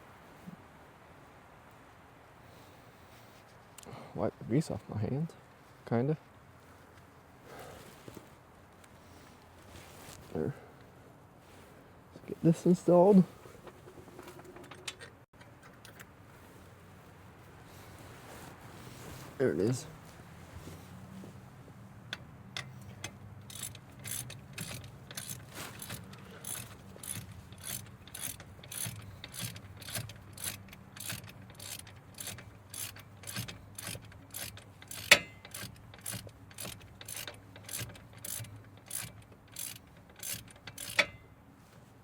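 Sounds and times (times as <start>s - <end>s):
hand ratchet clicking: 22.1s - 41.2s
sharp metal clacks: 22.6s - 41.2s.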